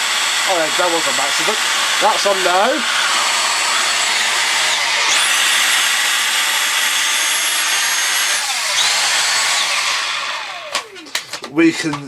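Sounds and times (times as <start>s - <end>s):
cordless vacuum whining: 0.0s - 12.0s.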